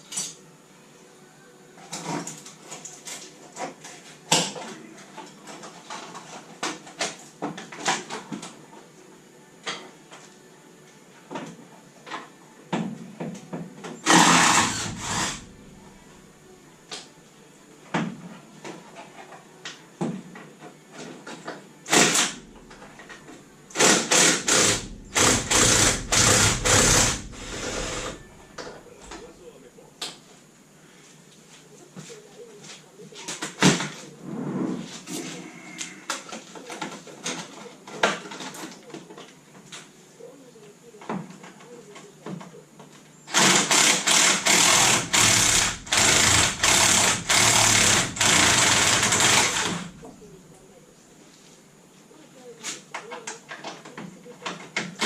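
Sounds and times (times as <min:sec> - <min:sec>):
power tool bursts: 0:14.0 - 0:15.5, 0:21.9 - 0:22.5, 0:23.7 - 0:29.2, 0:43.3 - 0:50.0.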